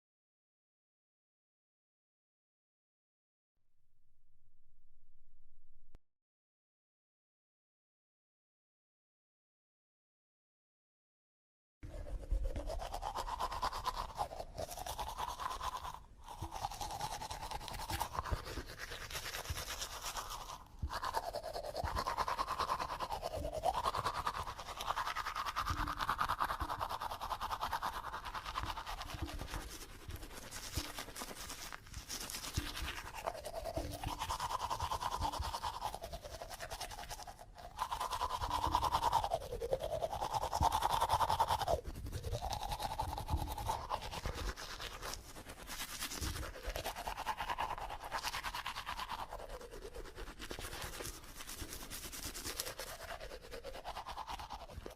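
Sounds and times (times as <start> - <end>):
bristles scrubbing teeth: 11.8 - 54.9.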